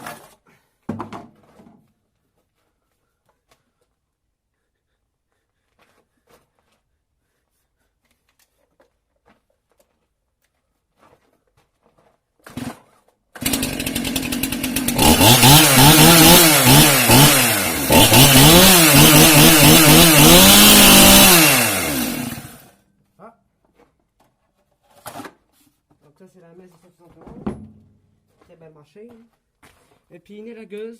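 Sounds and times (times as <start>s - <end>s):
chainsaw engine revving: 13.4s - 22.7s.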